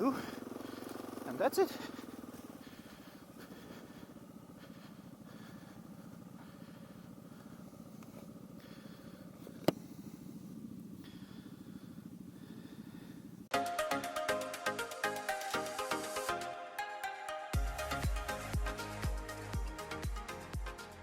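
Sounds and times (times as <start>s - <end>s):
motorcycle engine idling: 0.0s - 13.5s, 17.6s - 21.0s
electronic music: 13.5s - 21.0s.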